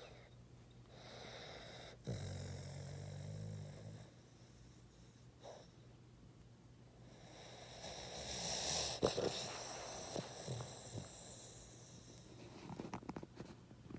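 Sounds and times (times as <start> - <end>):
dog snoring and snorting: 0.9 - 5.8, 7.0 - 13.0.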